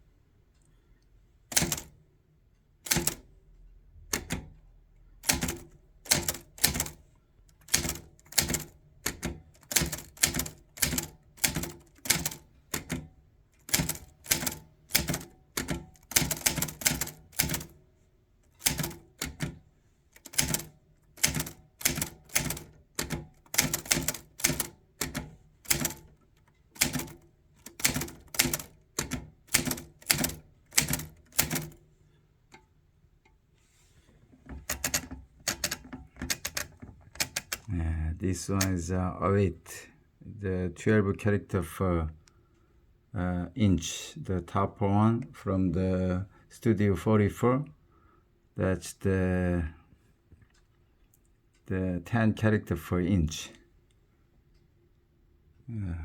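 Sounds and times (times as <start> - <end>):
typewriter keystrokes: 1.5 - 1.9, 2.8 - 3.2, 4.1 - 4.6, 5.2 - 17.8, 18.5 - 19.6, 20.2 - 31.8, 34.6 - 37.7.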